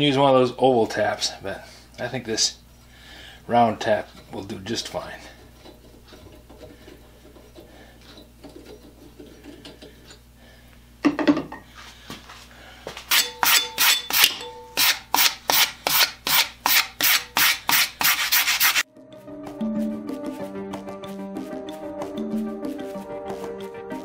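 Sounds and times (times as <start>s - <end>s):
hand file rasping on steel: 5.2s - 10.2s, 13.1s - 18.8s
background music: 18.9s - 24.0s.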